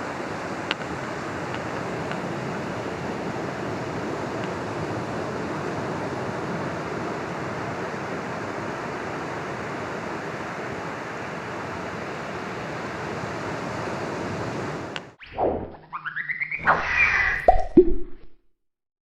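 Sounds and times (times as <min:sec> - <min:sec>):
sea surf on beach: 0:00.0 - 0:15.2.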